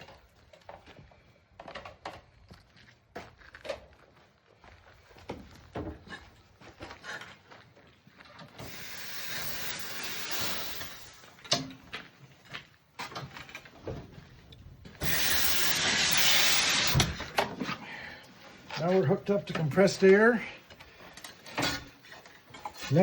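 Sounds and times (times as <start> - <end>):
compressed air hissing from hose: 8.6 - 11.4, 15.0 - 17.4.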